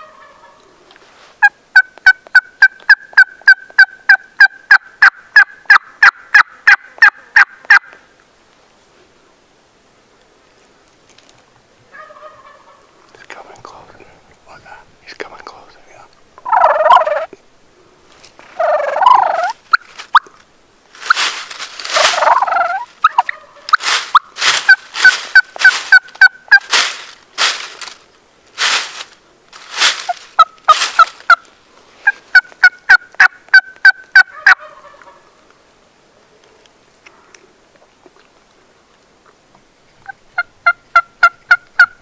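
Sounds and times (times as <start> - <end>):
turkey yelps: 0.0 - 0.6, 11.9 - 12.9, 16.4 - 17.3, 18.6 - 20.3, 22.0 - 26.4, 32.0 - 35.3
turkeys gobbling: 0.0 - 0.7, 1.4 - 7.9, 11.9 - 13.0, 16.4 - 17.3, 18.6 - 20.3, 21.9 - 26.8, 30.0 - 31.4, 32.0 - 35.4, 40.0 - 42.0.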